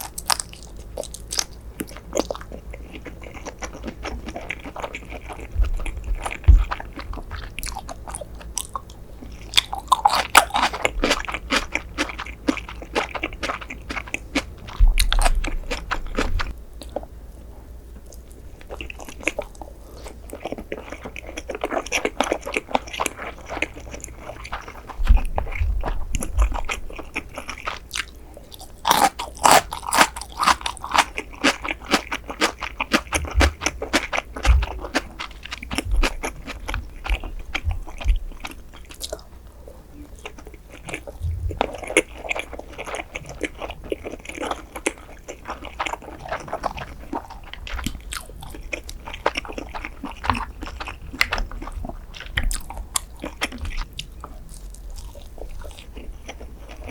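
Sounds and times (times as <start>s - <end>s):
chewing and biting food: 0.0s - 17.1s, 17.9s - 56.9s
dull low thumps: 5.4s - 7.6s, 14.5s - 16.6s, 24.9s - 27.0s, 35.7s - 38.5s.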